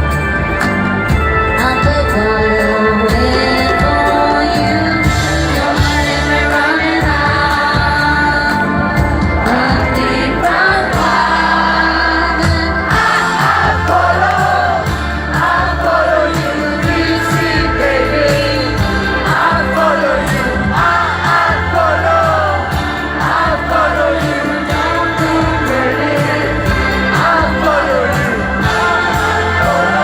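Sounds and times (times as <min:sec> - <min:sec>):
bass and drum beat: 0:00.0 - 0:30.0
woman singing: 0:01.6 - 0:22.6.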